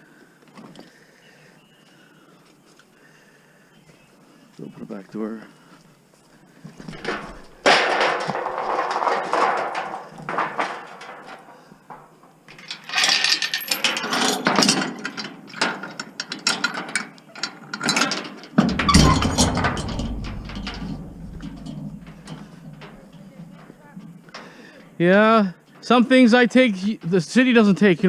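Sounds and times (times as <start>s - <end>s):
scrap metal clanking: 17.9s - 24.6s
low rumble: 18.6s - 23.8s.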